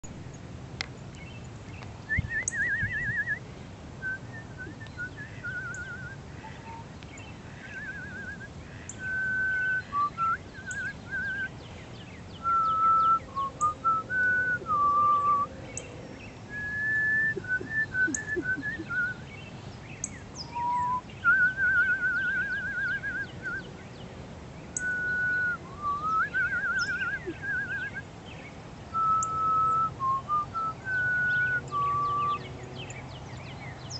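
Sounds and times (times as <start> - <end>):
woman whistling bird calls: 2.1 - 3.4, 4.0 - 6.8, 7.6 - 11.5, 12.4 - 15.5, 16.5 - 19.2, 20.4 - 23.7, 24.8 - 28.0, 29.0 - 32.4.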